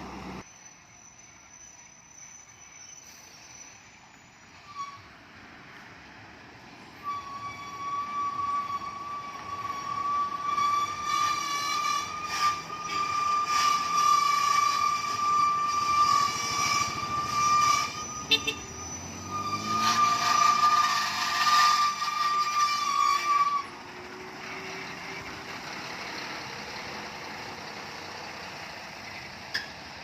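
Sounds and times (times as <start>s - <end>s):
passing traffic: 0.0s - 30.0s
heavy vehicle horn blast: 16.6s - 22.0s.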